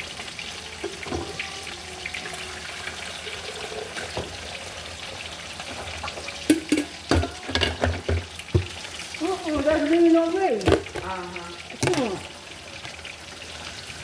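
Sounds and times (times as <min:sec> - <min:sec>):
dishes clattering: 0:05.6 - 0:13.1.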